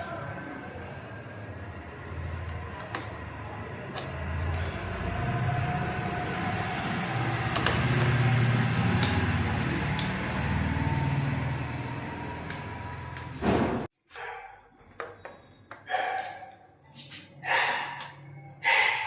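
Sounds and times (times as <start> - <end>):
low engine rumble: 0.0 - 13.9.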